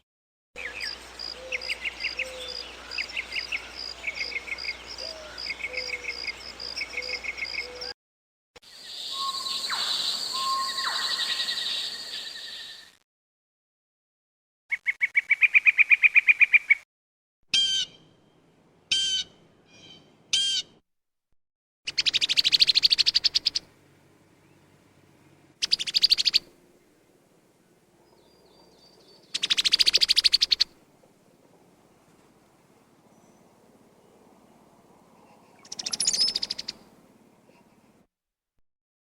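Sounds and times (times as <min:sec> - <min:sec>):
songbird trills: 0:00.6 - 0:07.9, 0:08.8 - 0:12.8, 0:21.9 - 0:23.7, 0:25.6 - 0:27.0, 0:28.0 - 0:30.8, 0:33.0 - 0:37.7
swooping whistled bird calls: 0:00.6 - 0:07.9, 0:08.8 - 0:12.8, 0:28.2 - 0:30.7, 0:35.2 - 0:36.8.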